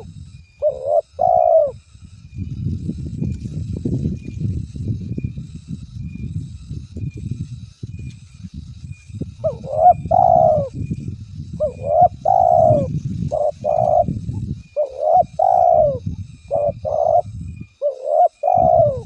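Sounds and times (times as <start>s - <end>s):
dove cooing: 0.6s - 1.8s, 9.4s - 10.7s, 11.6s - 14.2s, 14.8s - 19.0s.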